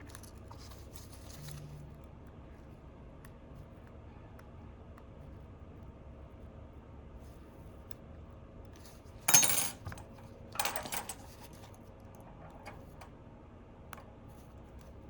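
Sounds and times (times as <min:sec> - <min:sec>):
metal tools clattering on workbench: 0:09.3 - 0:11.7.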